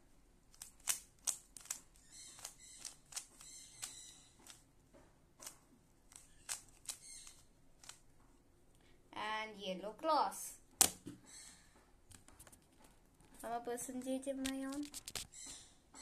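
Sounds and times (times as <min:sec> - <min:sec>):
plastic puzzle cube clicking: 0:00.5 - 0:04.6, 0:05.4 - 0:08.0.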